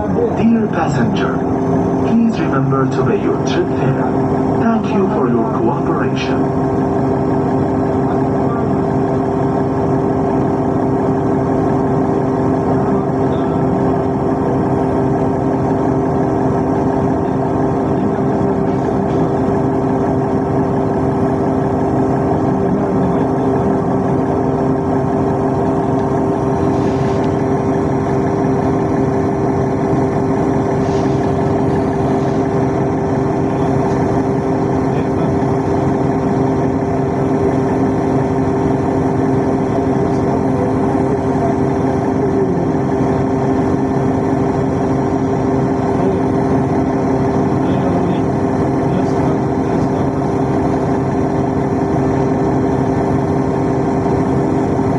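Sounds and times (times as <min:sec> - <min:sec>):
train rumbling: 0:00.0 - 0:06.4.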